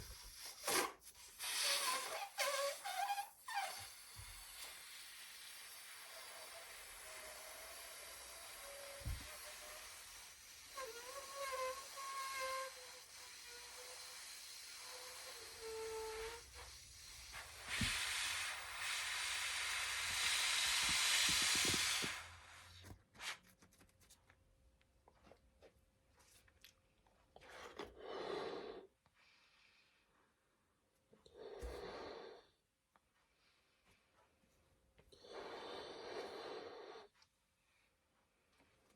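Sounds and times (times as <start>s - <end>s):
balloon deflating squeal and hiss: 0.0s - 23.4s.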